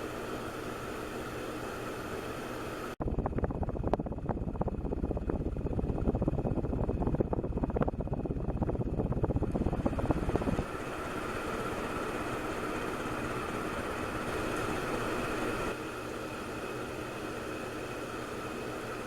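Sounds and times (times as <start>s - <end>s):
ceiling fan whoosh and hum: 0.0s - 19.0s
fan airflow buffeting microphone: 0.0s - 19.0s.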